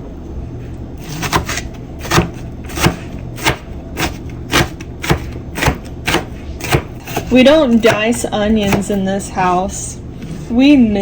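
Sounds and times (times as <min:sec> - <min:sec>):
knife chopping onion on board: 0:01.0 - 0:09.0.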